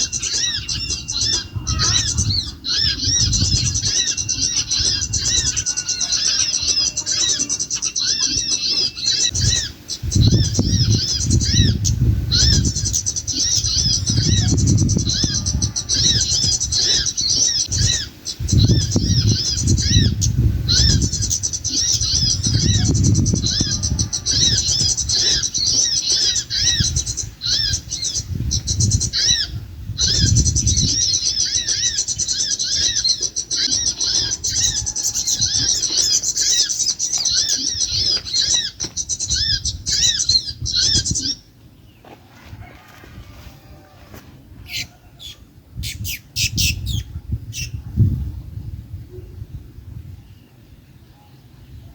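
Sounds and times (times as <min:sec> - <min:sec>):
rapid high-pitched bird chirps: 0:44.7 - 0:47.8.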